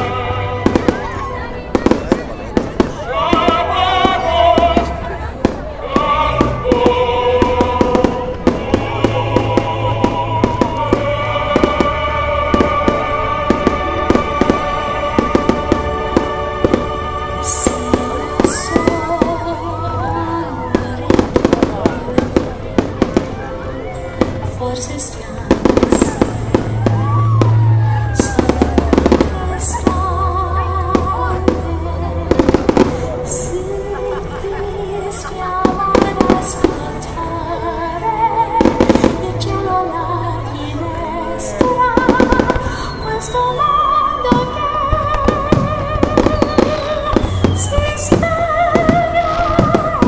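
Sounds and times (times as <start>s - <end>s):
fireworks bangs and crackles: 0.0s - 37.1s, 38.5s - 40.5s, 41.4s - 43.4s, 44.1s - 50.0s
music with long held notes: 0.0s - 50.0s.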